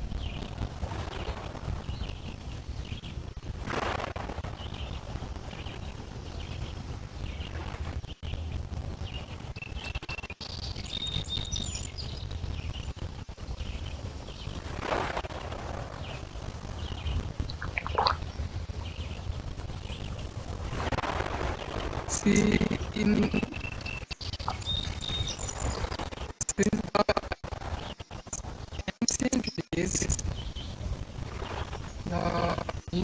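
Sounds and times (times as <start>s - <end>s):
birds chirping: 15.7s - 20.5s, 21.4s - 33.0s
lake waves lapping on stones: 16.8s - 19.1s
water splash: 17.5s - 18.4s.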